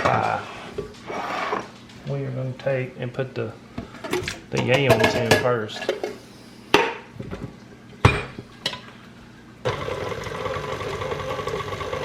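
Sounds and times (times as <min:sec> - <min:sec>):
stand mixer motor running: 0:09.6 - 0:12.0.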